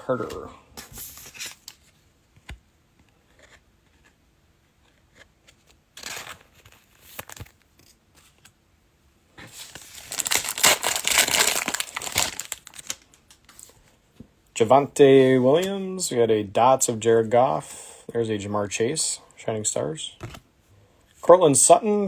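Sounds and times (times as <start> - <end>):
wrapper crinkling and tearing: 9.5 - 13.7
wrapper rustle: 9.5 - 13.8.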